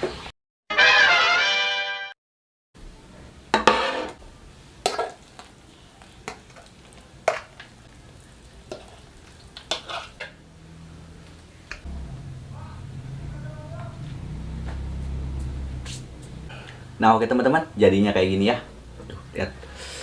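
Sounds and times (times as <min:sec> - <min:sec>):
faint sizzle: 0:04.2 - 0:14.4.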